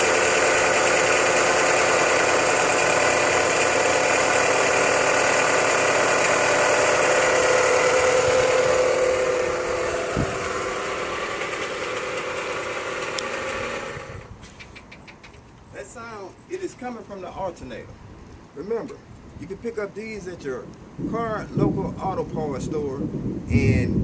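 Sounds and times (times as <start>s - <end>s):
car engine running with whine: 0.0s - 14.4s.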